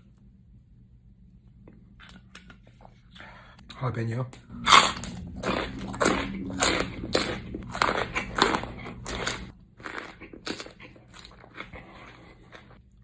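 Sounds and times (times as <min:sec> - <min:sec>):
crunching and chewing pepper: 0:04.6 - 0:13.0.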